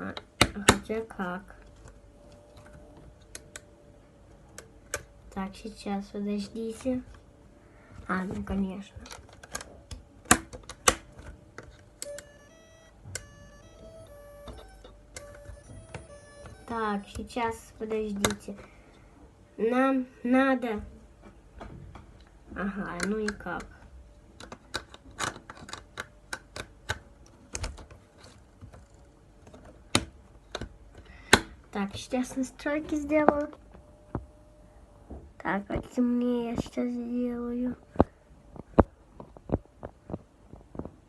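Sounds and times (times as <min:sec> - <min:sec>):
plastic parts clicking: 0:08.4 - 0:17.3, 0:18.1 - 0:18.7, 0:22.2 - 0:31.6
electronic beeping tune: 0:12.0 - 0:17.1.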